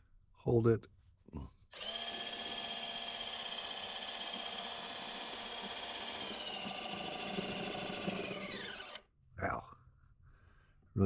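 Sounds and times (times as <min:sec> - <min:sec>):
electric pump whining: 0:01.7 - 0:09.0.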